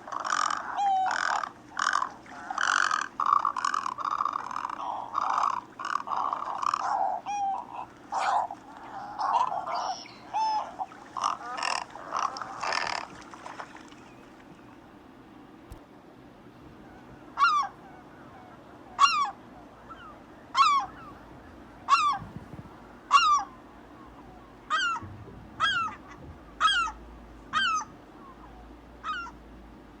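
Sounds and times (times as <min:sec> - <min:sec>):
goose honking: 0:23.0 - 0:29.4.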